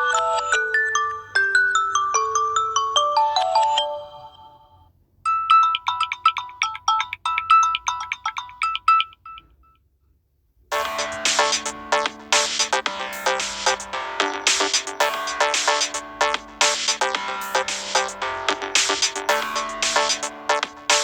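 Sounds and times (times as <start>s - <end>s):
bell-like ringtone melody: 0.0s - 9.5s, 10.7s - 21.0s
electronic ringtone with low note: 0.0s - 9.6s, 10.7s - 21.0s.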